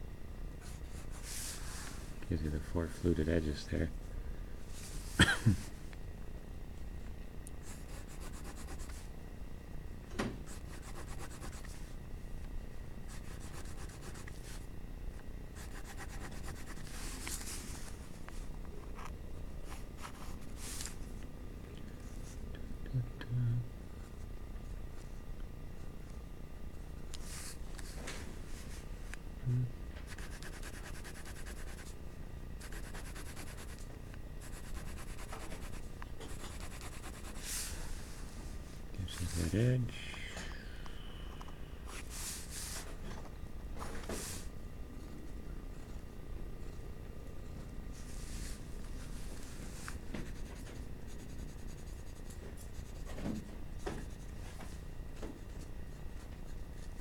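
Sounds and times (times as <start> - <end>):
pencil scratching on paper: 7.7 - 9.0, 10.5 - 11.7, 13.1 - 14.6, 15.6 - 17.4, 30.1 - 31.9, 32.6 - 33.8, 34.4 - 37.6, 49.8 - 53.2.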